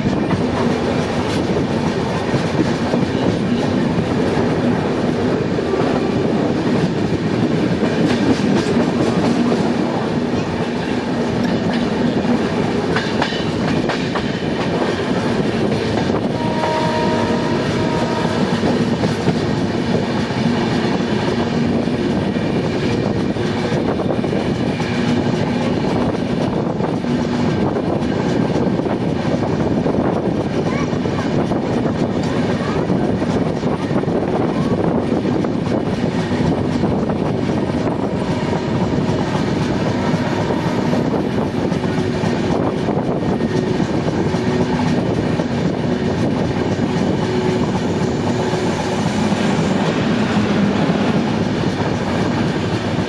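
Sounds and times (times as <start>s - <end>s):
train wheels clickety-clack: 0.0s - 53.0s
two-tone locomotive horn: 5.6s - 6.6s, 16.1s - 19.7s, 37.8s - 42.4s.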